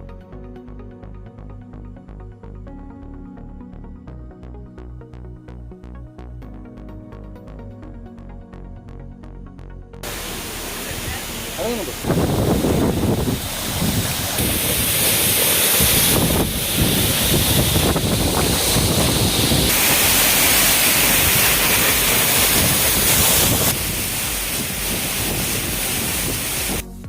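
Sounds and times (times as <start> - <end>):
waterfall rushing over rock: 10.0 - 26.8.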